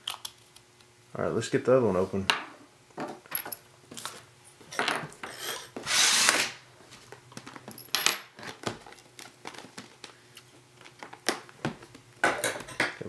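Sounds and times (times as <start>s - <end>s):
packaging rasp: 5.5s - 6.6s.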